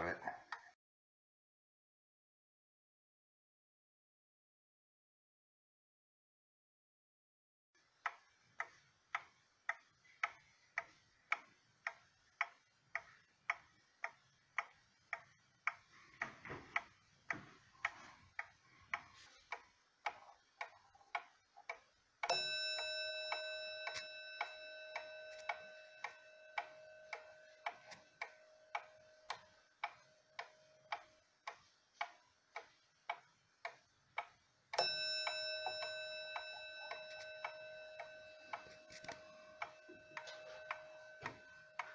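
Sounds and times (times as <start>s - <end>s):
wall clock ticking: 7.8s - 41.9s
clock chime note: 22.2s - 31.0s, 34.8s - 41.9s.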